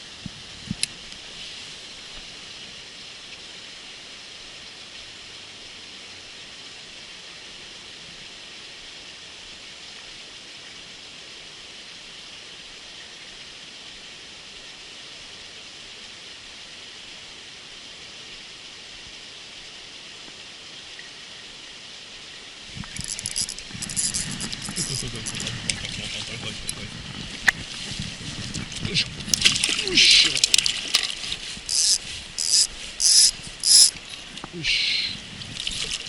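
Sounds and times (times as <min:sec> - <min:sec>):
flowing water rushing: 0:20.1 - 0:36.0.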